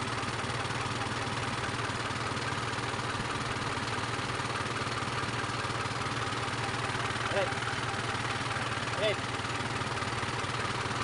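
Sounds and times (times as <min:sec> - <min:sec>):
diesel engine idling: 0:00.0 - 0:11.0.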